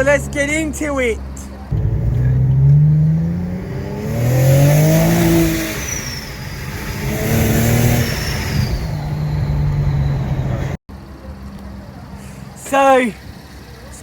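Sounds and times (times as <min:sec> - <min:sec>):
car engine revving: 0:01.7 - 0:10.8.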